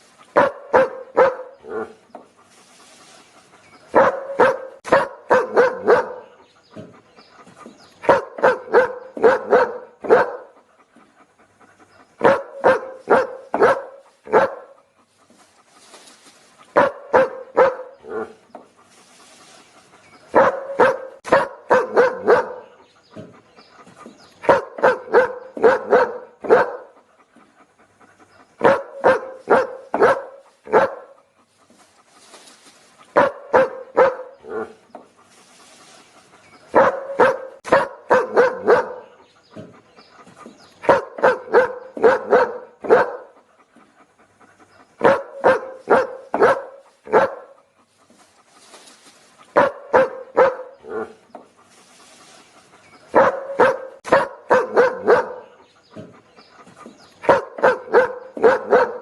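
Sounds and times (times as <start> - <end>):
dog barking: 0.3 - 2.0, 3.9 - 6.4, 8.0 - 10.6, 12.2 - 14.8, 16.7 - 18.4, 20.3 - 22.8, 24.4 - 27.0, 28.6 - 31.2, 33.1 - 34.8, 36.7 - 39.7, 40.8 - 43.4, 45.0 - 47.6, 49.5 - 51.2, 53.1 - 56.1, 57.2 - 59.0.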